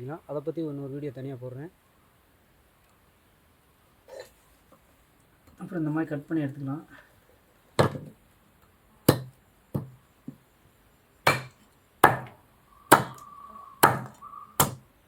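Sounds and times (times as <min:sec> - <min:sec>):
blade chopping root: 0:11.3 - 0:13.2, 0:13.8 - 0:14.8.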